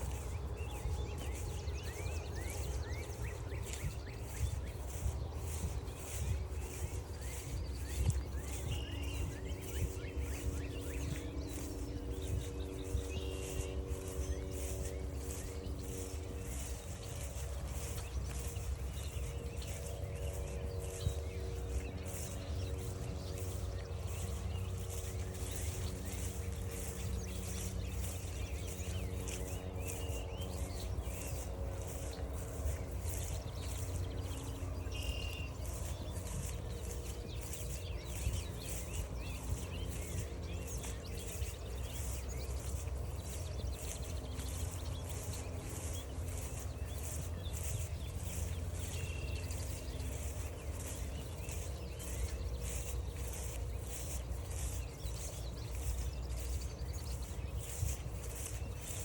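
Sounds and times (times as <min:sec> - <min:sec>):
bird chirps: 0:00.0 - 0:59.0
footsteps: 0:00.0 - 0:59.0.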